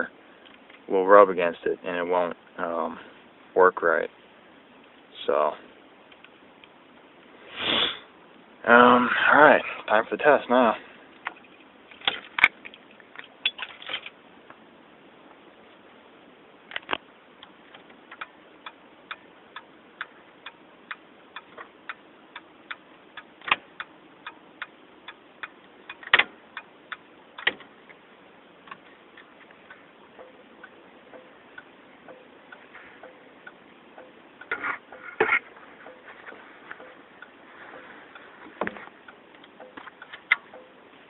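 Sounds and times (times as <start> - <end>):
turn signal flasher clicking: 16.7 - 37.4, 38.1 - 40.8.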